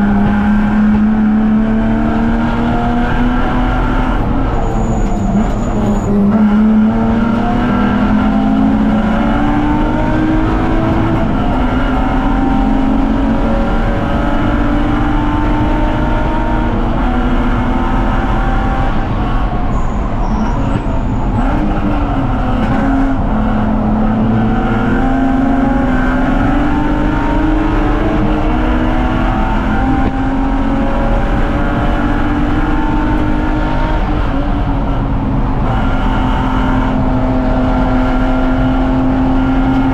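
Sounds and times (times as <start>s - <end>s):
racing car engine revving: 0.0s - 39.9s.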